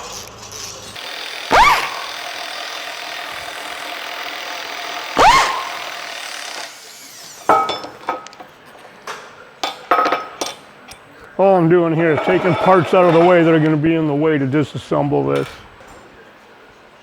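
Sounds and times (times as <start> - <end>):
air impact wrench bursts: 1.0 - 7.8.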